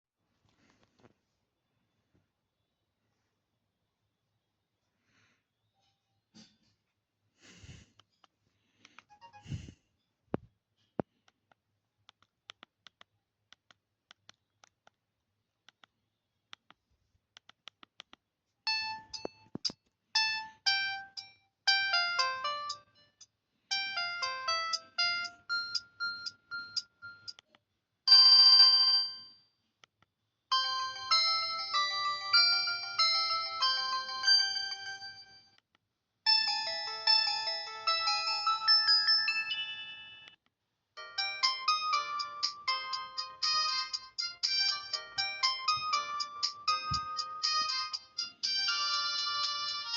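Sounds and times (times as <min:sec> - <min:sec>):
mobile phone ringtone: 0:09.1 - 0:09.7, 0:18.7 - 0:27.3, 0:28.1 - 0:29.4, 0:30.5 - 0:35.6, 0:36.3 - 0:40.4, 0:41.0 - 0:49.9.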